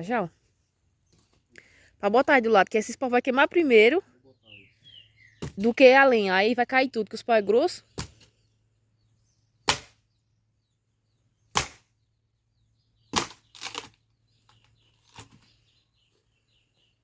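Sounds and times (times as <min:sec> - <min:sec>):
firewood being struck: 0:07.9 - 0:08.3, 0:09.6 - 0:10.0, 0:11.5 - 0:11.9, 0:13.1 - 0:13.7.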